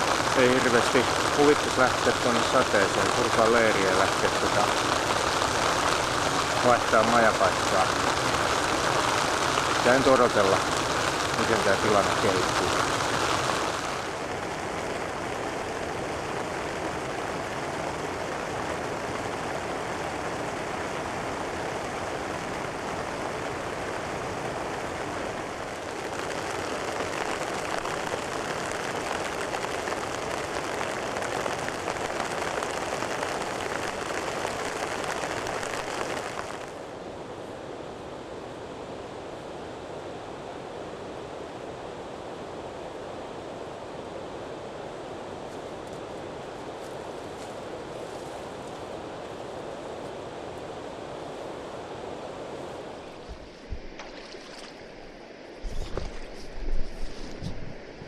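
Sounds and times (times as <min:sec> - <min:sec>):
river water rushing: 0:00.0 - 0:56.4
falling rain: 0:00.0 - 0:58.0.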